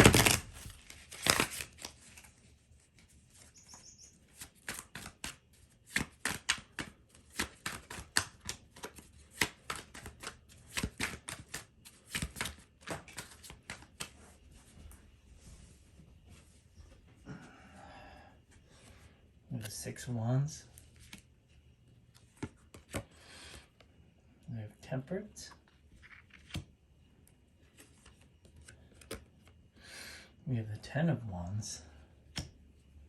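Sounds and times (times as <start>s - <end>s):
cards being shuffled: 0.0s - 14.3s, 20.8s - 21.3s, 22.1s - 23.7s, 25.6s - 26.7s, 27.7s - 29.6s.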